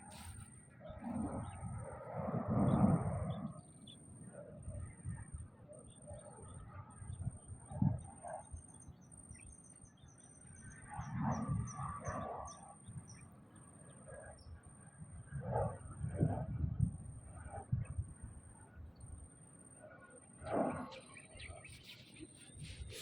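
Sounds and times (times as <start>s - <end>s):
birds calling: 20.8s - 23.0s.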